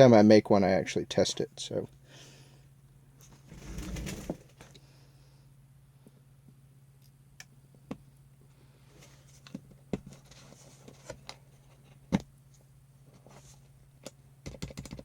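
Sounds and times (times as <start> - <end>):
steady low hum: 0.0 - 14.4.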